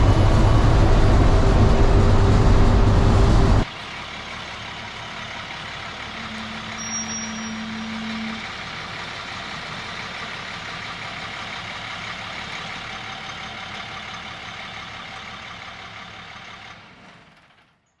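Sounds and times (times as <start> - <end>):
steady hum: 0.0 - 3.6
diesel truck engine running: 0.0 - 17.9.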